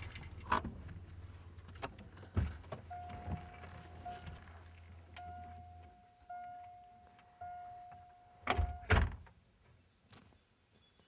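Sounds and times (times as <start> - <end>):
car engine cutting off: 0.0 - 1.2.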